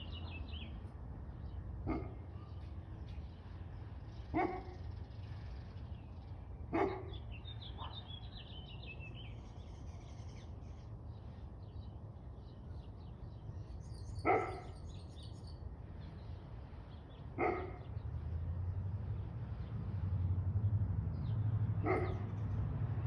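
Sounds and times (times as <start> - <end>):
bird chirping: 0.0 - 0.8, 5.9 - 18.1
dog barking: 1.8 - 2.6, 4.3 - 4.8, 6.7 - 7.2, 7.8 - 8.1, 14.2 - 14.8, 17.4 - 17.9, 21.8 - 22.3.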